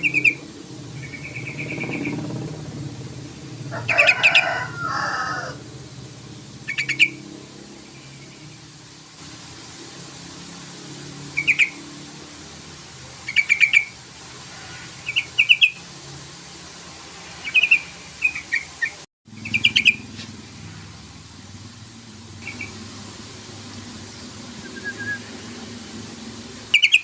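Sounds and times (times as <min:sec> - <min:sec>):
bird chattering calls: 0:00.0 - 0:02.3, 0:06.6 - 0:07.2, 0:11.4 - 0:11.8, 0:13.2 - 0:14.0, 0:15.0 - 0:15.8, 0:17.4 - 0:20.2, 0:22.4 - 0:22.8, 0:26.6 - 0:27.0
low background hum: 0:00.0 - 0:16.0.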